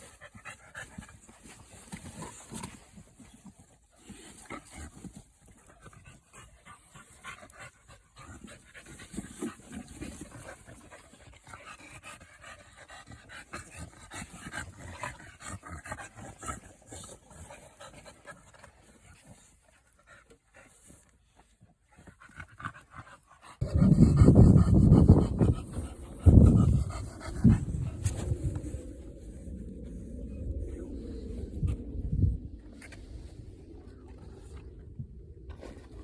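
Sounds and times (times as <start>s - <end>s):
puppy panting: 21.9s - 29.0s.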